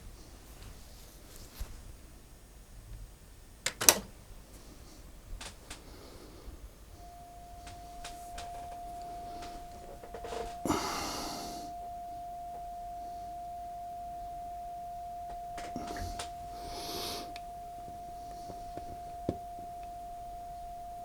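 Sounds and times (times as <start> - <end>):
rustling noise: 0.0 - 2.2
steady test tone: 6.8 - 21.0.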